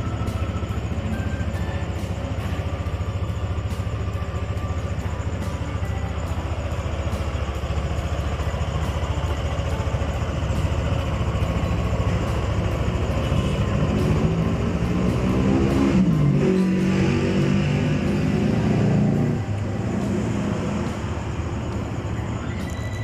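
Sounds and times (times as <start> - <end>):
rough scooter engine running: 0.0 - 23.0.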